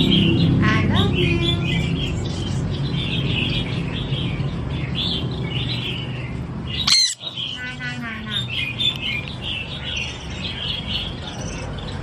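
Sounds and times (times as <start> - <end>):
parrot chirping: 5.2 - 11.6
parrot shrill screech: 6.8 - 7.2.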